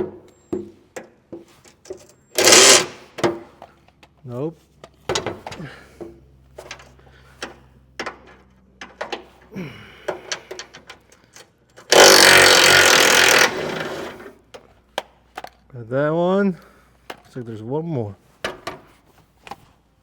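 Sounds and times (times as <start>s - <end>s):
power tool running: 2.4s - 3.1s, 11.9s - 14.3s
clicks and knocks of fasteners: 4.8s - 11.9s.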